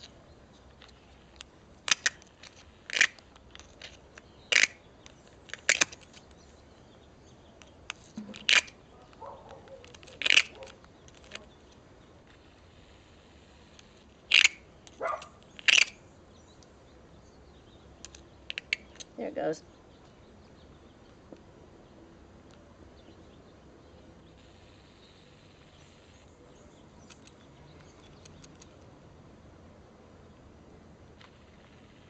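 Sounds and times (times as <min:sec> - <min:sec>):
flint scraping strikes: 0:00.8 - 0:06.4, 0:07.9 - 0:11.6, 0:14.3 - 0:16.0.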